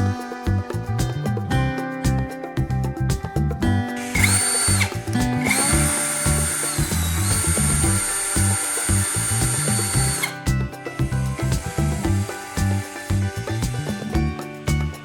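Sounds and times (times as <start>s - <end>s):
background music: 0.0s - 15.0s
electric motor whining: 4.0s - 10.4s, 11.0s - 14.3s.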